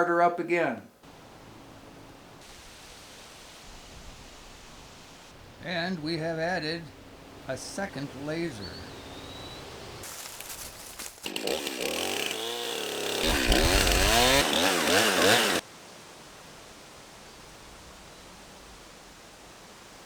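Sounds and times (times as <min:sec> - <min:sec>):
faint steady hiss: 0:00.0 - 0:11.2, 0:15.6 - 0:20.0
chainsaw running: 0:10.0 - 0:15.6.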